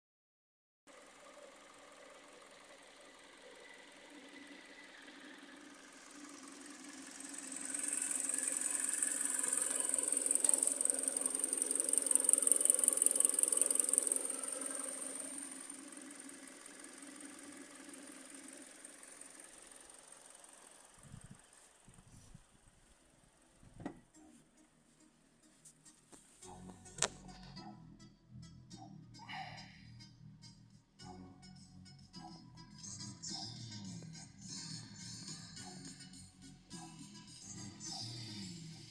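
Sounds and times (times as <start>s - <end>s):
petrol engine running: 0.9s - 23.8s
loud high rapid ticking: 3.8s - 20.9s.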